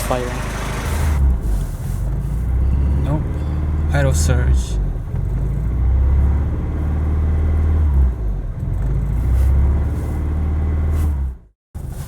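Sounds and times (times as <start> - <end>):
car engine idling roughly: 0.0 - 3.6.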